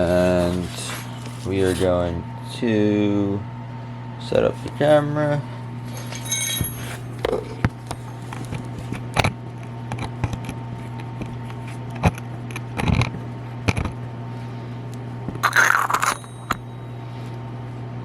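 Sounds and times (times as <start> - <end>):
steady low hum: 0.0 - 18.0
metal parts clicking and clinking: 5.9 - 7.4, 15.4 - 16.6
scraping clatter: 5.9 - 7.5.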